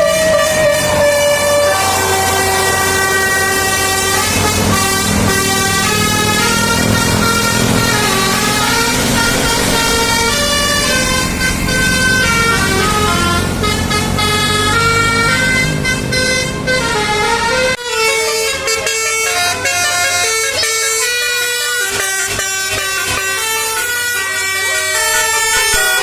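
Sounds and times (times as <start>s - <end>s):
multi-tone air horn melody: 0.0s - 26.0s
low rumble: 0.7s - 14.6s.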